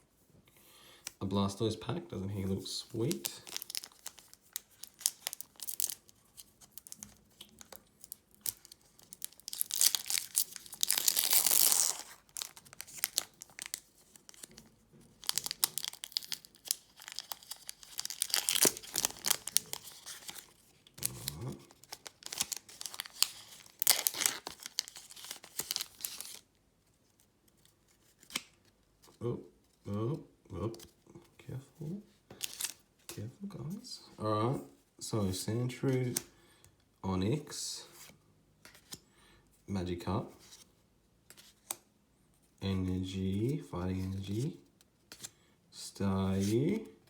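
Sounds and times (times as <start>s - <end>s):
foil wrapper tearing and crinkling: 3.0s - 26.4s, 32.4s - 32.8s.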